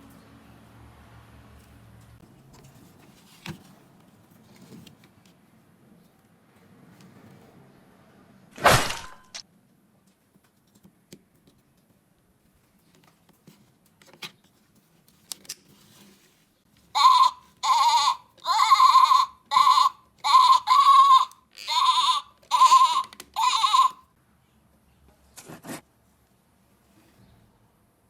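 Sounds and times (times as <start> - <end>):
goat bleating: 17.0 - 24.0.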